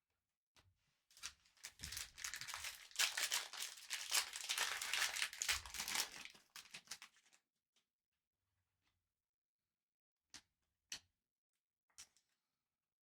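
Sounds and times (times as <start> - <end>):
foil wrapper crinkling and tearing: 1.5 - 7.3.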